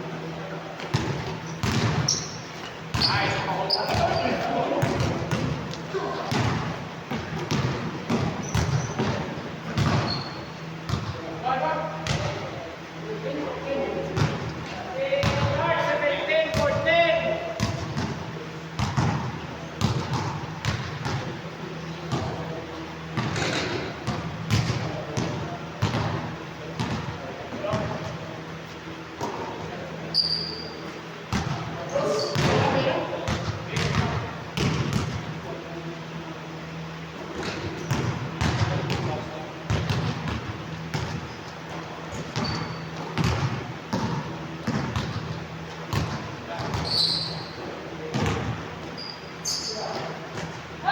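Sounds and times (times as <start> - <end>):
basketball bouncing on court floor: 0.8 - 11.2, 12.0 - 12.5, 14.2 - 14.6, 15.2 - 15.6, 16.5 - 16.8, 17.6 - 18.2, 18.8 - 21.4, 22.0 - 22.4, 23.1 - 28.2, 31.3 - 31.7, 32.3 - 35.3, 37.4 - 48.7
shoe squeak: 1.4 - 4.4, 8.4 - 9.1, 9.9 - 10.6, 30.1 - 31.0, 31.9 - 32.4, 42.3 - 43.0, 46.8 - 47.7, 48.8 - 50.0.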